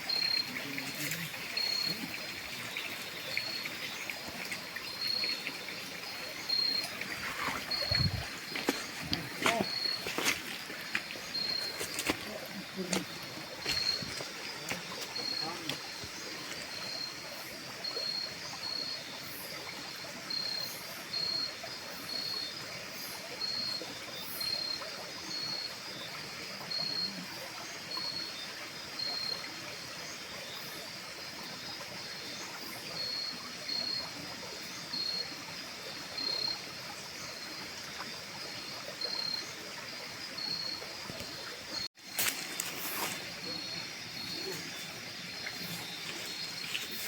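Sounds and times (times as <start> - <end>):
insects chirping: 0.0 - 47.0
steady hiss: 42.0 - 47.0.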